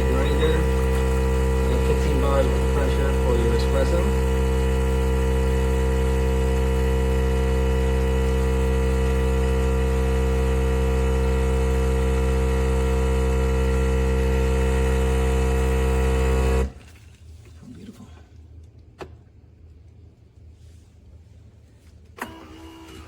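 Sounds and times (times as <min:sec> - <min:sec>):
espresso machine pump buzzing: 0:00.0 - 0:16.8.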